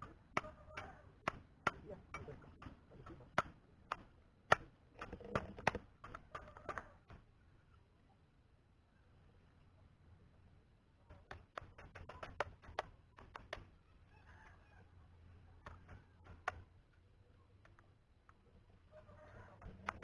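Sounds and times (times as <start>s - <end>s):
faint clicks and taps: 15.6s - 17.0s, 17.6s - 18.4s.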